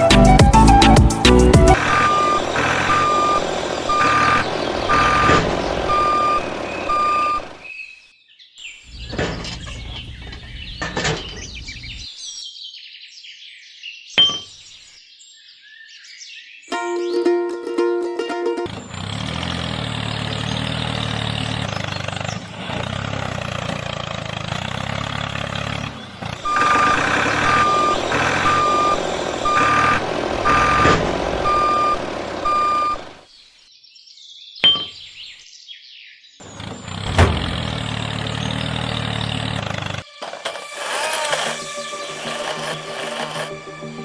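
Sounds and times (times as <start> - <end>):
reversing alarm beeping: 1.8 - 5.3, 5.9 - 7.4, 26.5 - 30.8.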